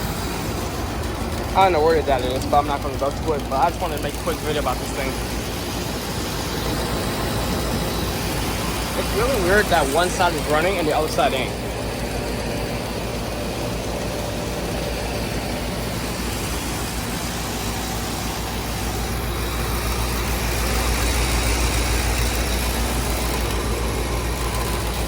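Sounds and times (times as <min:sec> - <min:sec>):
air conditioner humming: 0:00.0 - 0:25.0.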